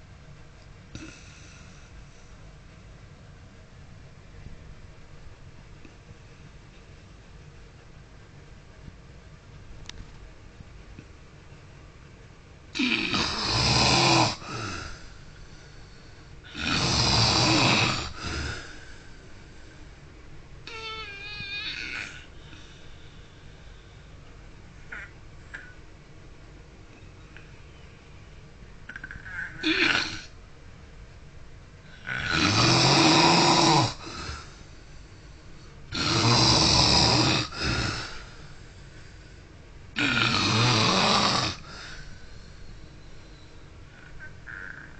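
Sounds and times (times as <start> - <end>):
man snoring: 12.7 - 15.0, 16.4 - 18.8, 29.6 - 30.3, 31.9 - 34.5, 35.9 - 38.4, 40.0 - 42.1
soft breath: 22.3 - 25.8, 41.6 - 44.9.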